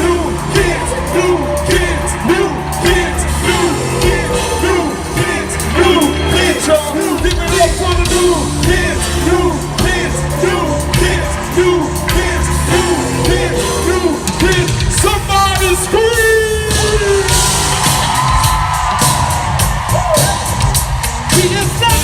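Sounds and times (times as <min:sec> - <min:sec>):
person singing: 0:00.0 - 0:17.3
live pop music with heavy bass: 0:00.0 - 0:22.0.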